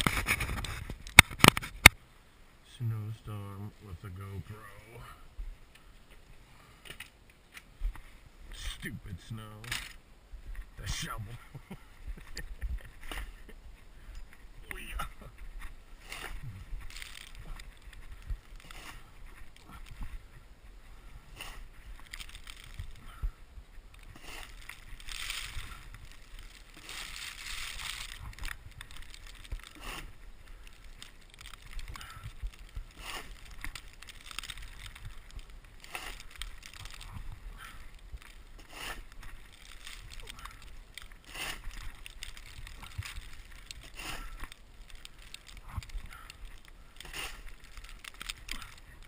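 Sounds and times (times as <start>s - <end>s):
crunching and scraping in snow: 0.0s - 1.9s, 7.7s - 49.0s.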